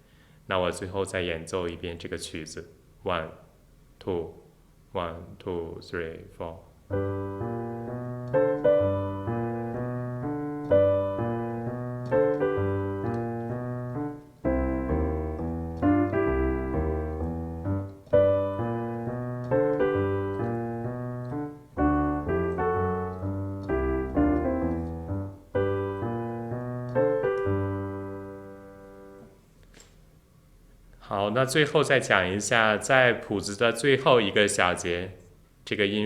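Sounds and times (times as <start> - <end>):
blues piano piece: 6.9 - 29.4.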